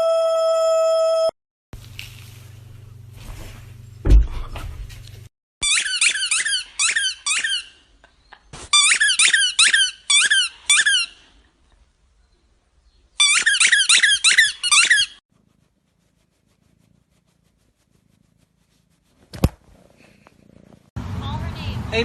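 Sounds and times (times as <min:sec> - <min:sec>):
thump: 0:04.0 - 0:04.9
high-pitched squeaks: 0:05.6 - 0:07.9, 0:08.6 - 0:11.2, 0:13.2 - 0:15.2.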